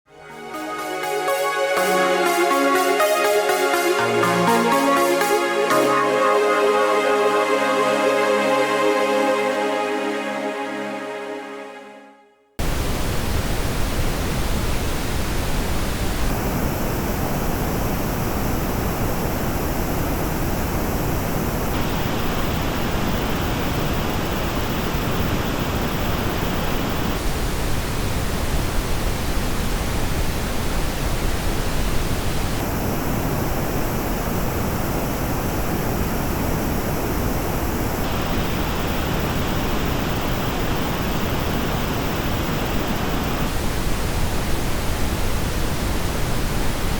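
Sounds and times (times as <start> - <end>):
pink noise test signal: 12.6 - 46.9.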